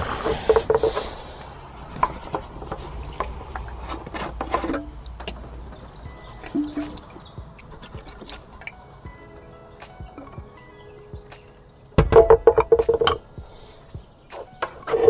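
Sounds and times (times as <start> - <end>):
soldering iron scraping plastic: 0.0 - 8.8.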